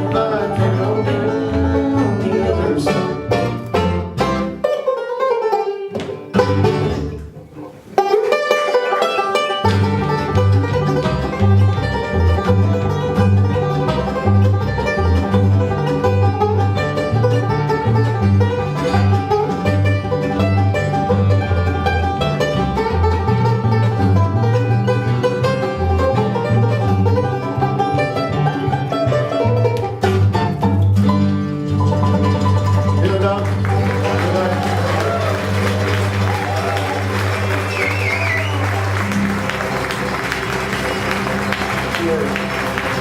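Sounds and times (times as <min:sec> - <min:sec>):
banjo: 0:00.0 - 0:43.0
bass: 0:00.0 - 0:43.0
guitar: 0:00.0 - 0:43.0
mandolin: 0:00.0 - 0:43.0.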